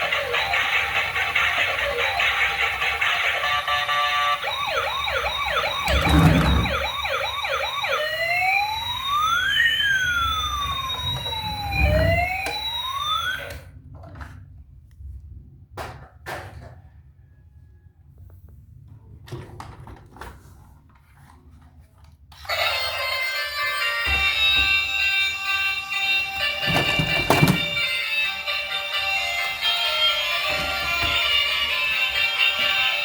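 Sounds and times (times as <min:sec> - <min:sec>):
electronic siren: 0:00.0 - 0:13.7, 0:22.4 - 0:33.0.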